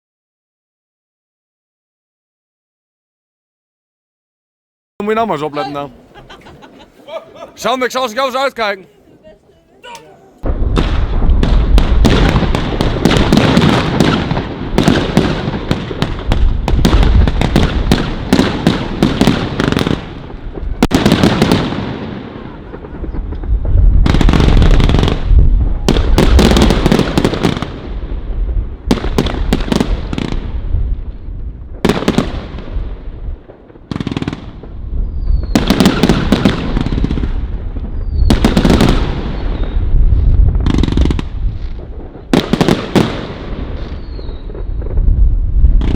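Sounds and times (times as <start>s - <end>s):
firework barrage of bangs: 10.4s - 45.9s.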